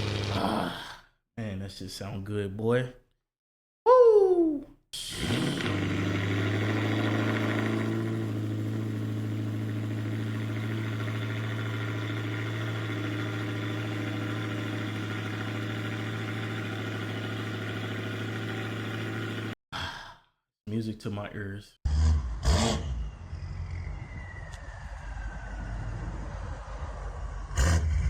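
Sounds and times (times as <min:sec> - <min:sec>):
engine idling with deep rumble: 0:05.7 - 0:19.6.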